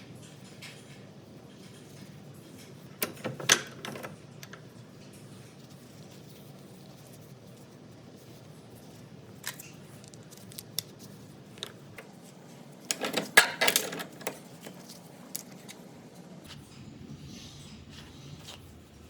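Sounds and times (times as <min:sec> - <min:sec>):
small metal parts clinking: 0:12.9 - 0:15.6.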